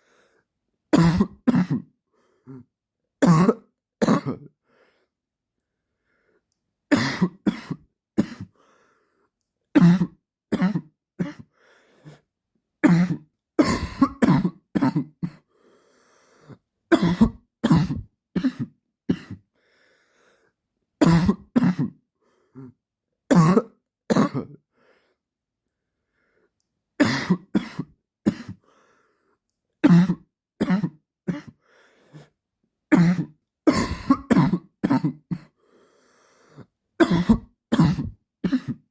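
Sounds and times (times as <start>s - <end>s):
man coughing: 1.0s - 1.9s, 12.8s - 15.4s, 16.9s - 19.4s, 21.0s - 22.0s, 23.3s - 24.6s, 27.0s - 28.6s, 32.9s - 35.5s, 37.0s - 38.9s.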